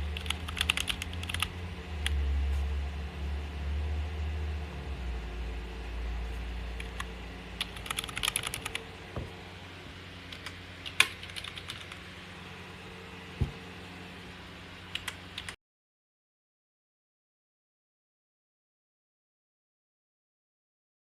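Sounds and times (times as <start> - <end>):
low steady hum: 0.0 - 15.6.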